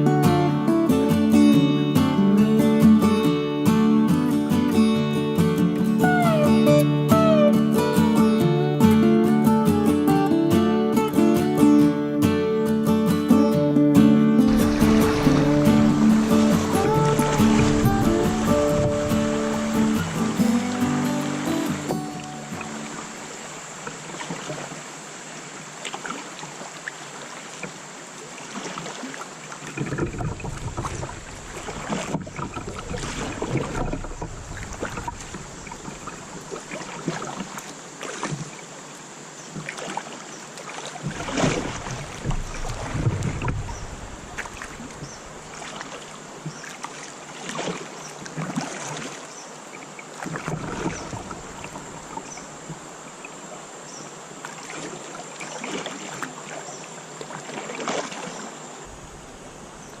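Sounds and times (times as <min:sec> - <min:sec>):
steady watery hiss: 0:14.4 - 0:47.4, 0:49.2 - 0:57.5, 0:58.4 - 1:00.0
paddle splashing in water: 0:14.4 - 1:00.0.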